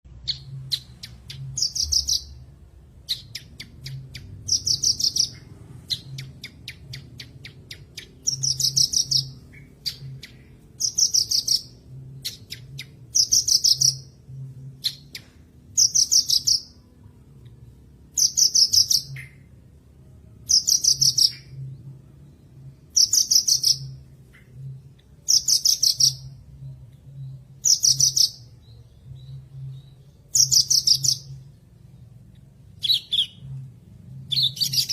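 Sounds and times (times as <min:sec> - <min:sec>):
lark singing trills: 0:00.3 - 0:02.4, 0:03.1 - 0:14.2, 0:25.2 - 0:26.4, 0:27.2 - 0:31.4, 0:32.8 - 0:33.5, 0:34.3 - 0:34.9.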